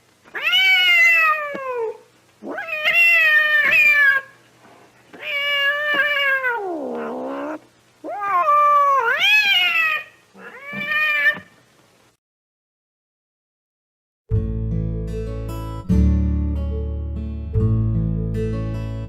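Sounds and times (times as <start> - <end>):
cat yowling: 0.3 - 4.4, 5.2 - 11.5.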